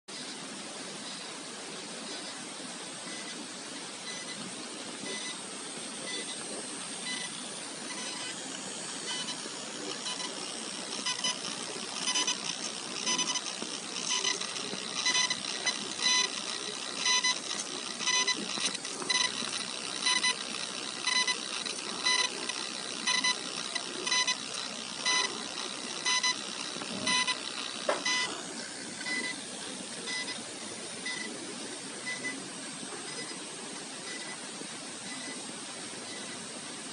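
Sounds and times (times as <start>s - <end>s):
steady high hiss: 0.2s - 36.9s
pulsing electrical chirp: 3.1s - 31.3s.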